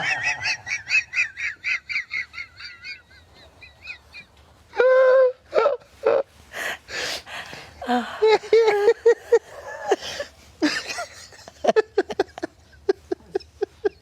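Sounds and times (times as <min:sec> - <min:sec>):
woman's wheezing laugh: 0:00.0 - 0:04.2, 0:07.8 - 0:14.0.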